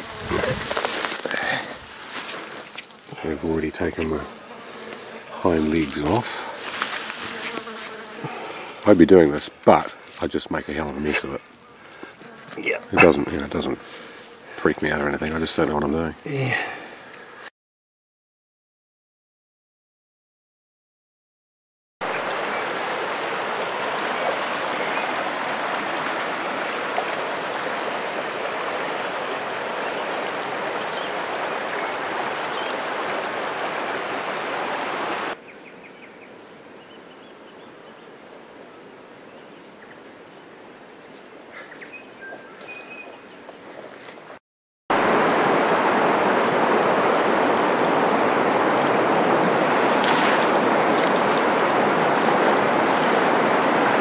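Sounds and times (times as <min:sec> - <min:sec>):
stream water rushing: 0:00.0 - 0:07.4, 0:22.0 - 0:35.4, 0:44.9 - 0:54.0.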